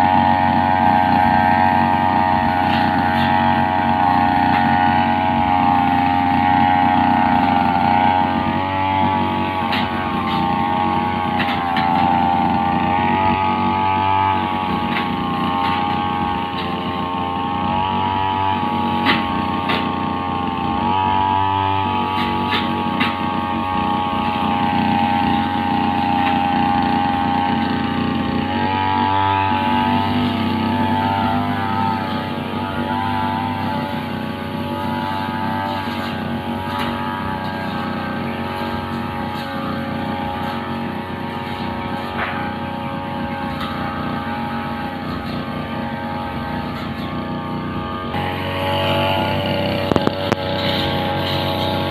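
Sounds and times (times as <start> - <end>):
brush cutter engine running: 0.0 - 51.9.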